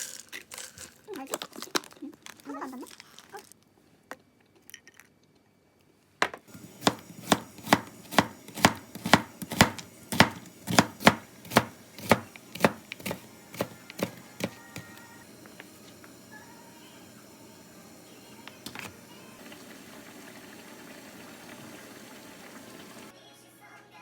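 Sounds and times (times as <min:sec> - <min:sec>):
knife chopping on cutting board: 0:06.8 - 0:14.9.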